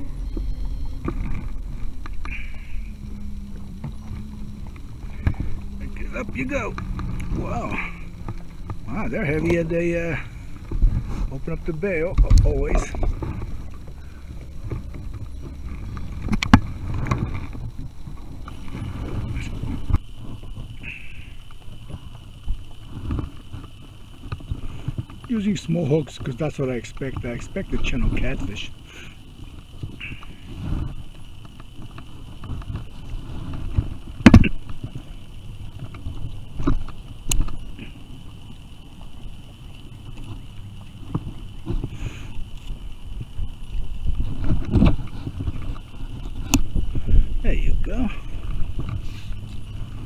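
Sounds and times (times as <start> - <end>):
low rumble: 0.0 - 20.2
low steady background noise: 0.0 - 50.0
knocks and thumps on plastic kayak: 31.5 - 37.6.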